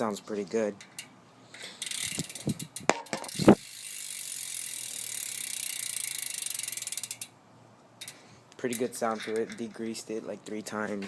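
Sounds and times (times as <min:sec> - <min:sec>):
bike hub clicking: 0:00.8 - 0:07.4, 0:08.0 - 0:09.8
knocks on bike wheel: 0:02.9 - 0:03.4.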